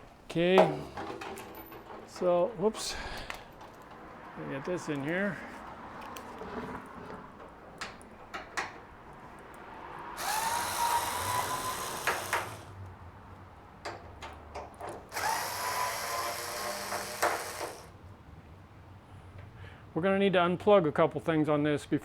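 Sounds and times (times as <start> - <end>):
cordless drill motor whining: 10.2 - 12.7, 15.1 - 17.9.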